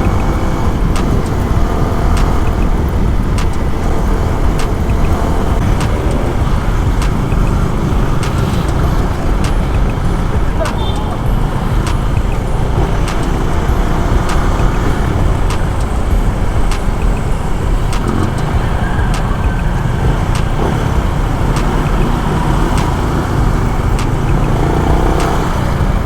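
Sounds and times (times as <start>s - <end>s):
wind and road noise: 0.0s - 26.0s.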